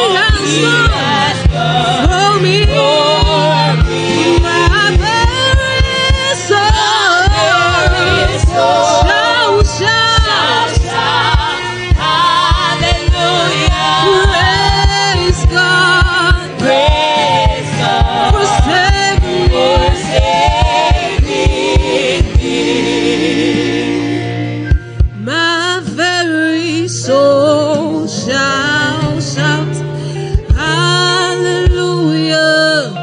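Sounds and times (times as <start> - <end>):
voices singing with band: 0.0 - 33.0
kick drum beat: 0.2 - 22.9, 24.7 - 25.2, 30.4 - 31.0, 31.6 - 31.9.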